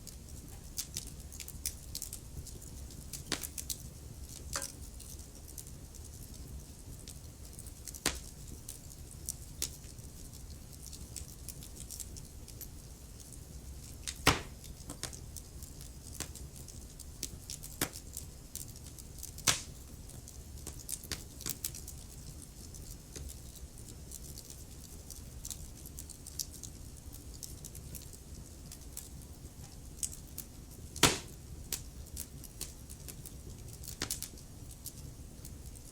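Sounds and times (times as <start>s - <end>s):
wood fire crackling: 0.0s - 35.9s
loud fire pops: 2.5s - 3.7s, 14.0s - 15.2s, 19.4s - 19.8s, 31.0s - 31.8s.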